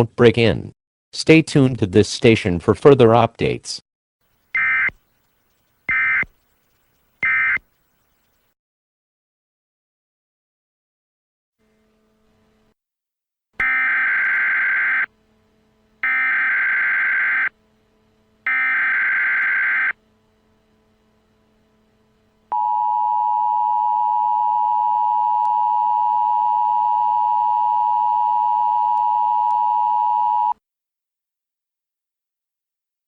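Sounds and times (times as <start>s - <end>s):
digital data bursts: 4.6s - 8.0s, 16.0s - 17.5s, 18.5s - 19.9s
two-tone attention signal: 13.6s - 15.1s, 16.0s - 17.5s, 18.5s - 20.0s.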